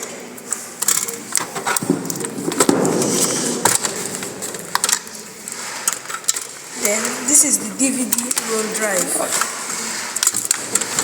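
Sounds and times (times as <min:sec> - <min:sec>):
rough scraping slide: 0:06.7 - 0:11.0.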